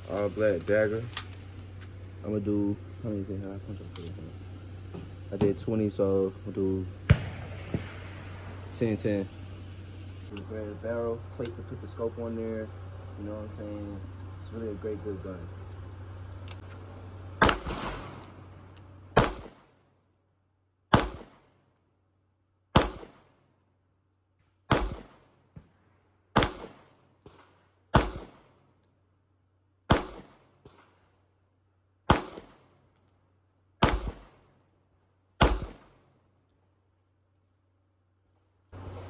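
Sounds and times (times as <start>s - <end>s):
pistol shots: 7.0s - 9.7s, 17.4s - 19.8s, 20.9s - 21.6s, 22.7s - 23.4s, 24.7s - 25.4s, 26.3s - 28.6s, 29.9s - 31.0s, 32.1s - 32.8s, 33.8s - 34.6s, 35.4s - 36.2s.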